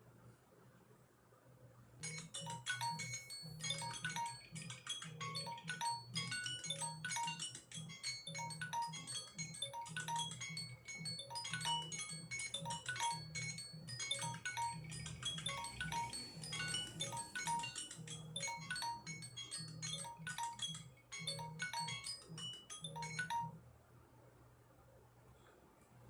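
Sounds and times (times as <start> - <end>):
phone alarm chiming melody: 2.0 - 23.6.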